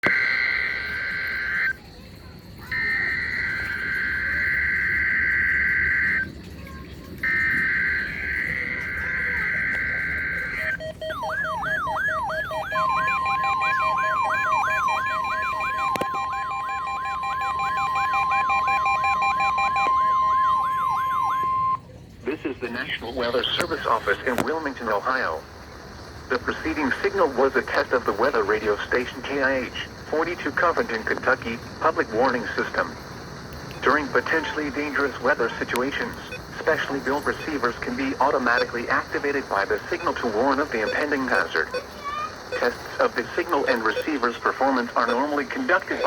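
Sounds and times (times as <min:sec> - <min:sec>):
siren-like alarm sweeping upward: 0:00.0 - 0:01.8, 0:02.7 - 0:06.4, 0:07.2 - 0:21.8
steady beep tones: 0:00.0 - 0:01.8, 0:02.6 - 0:06.4, 0:07.2 - 0:46.0.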